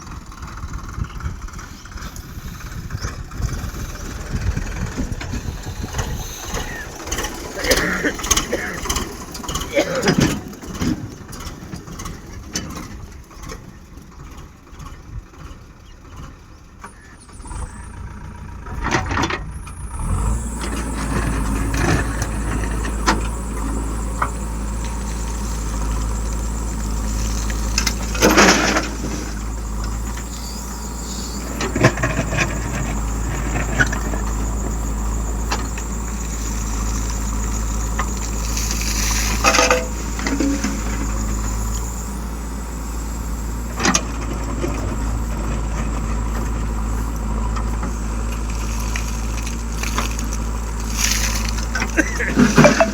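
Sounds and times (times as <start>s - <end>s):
vehicle engine running: 0.0s - 52.9s
brief squeal: 5.4s - 6.9s, 25.1s - 42.0s
loud clatter: 20.8s - 30.4s, 31.2s - 41.9s, 47.6s - 52.9s.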